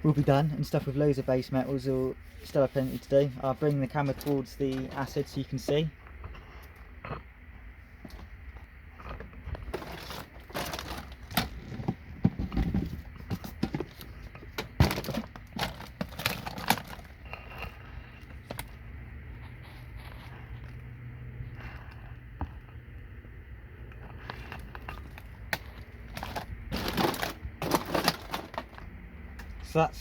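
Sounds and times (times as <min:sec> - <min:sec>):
steady low hum: 0:00.0 - 0:30.0.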